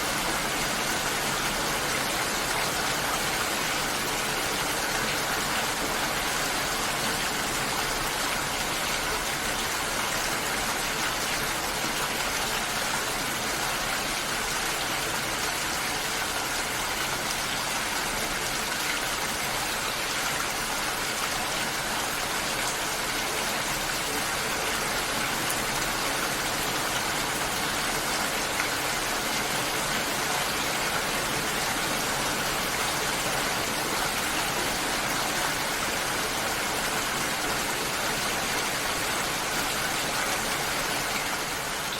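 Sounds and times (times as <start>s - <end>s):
rain falling steadily: 0.0s - 41.9s.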